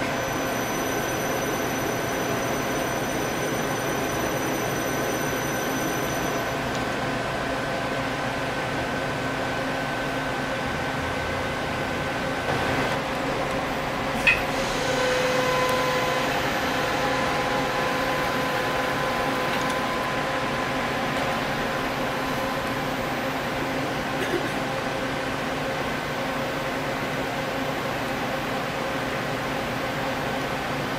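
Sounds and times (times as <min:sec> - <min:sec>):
machine whining tones: 0:00.0 - 0:06.8, 0:14.2 - 0:23.6
lathe mechanical hum: 0:00.0 - 0:30.9.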